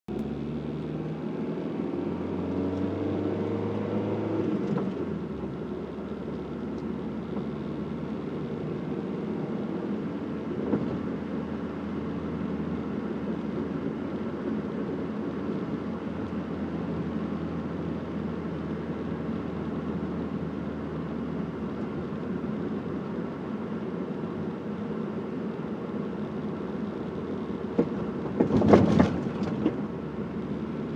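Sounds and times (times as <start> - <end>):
road noise: 0.0 - 30.9
car engine accelerating: 0.1 - 12.9.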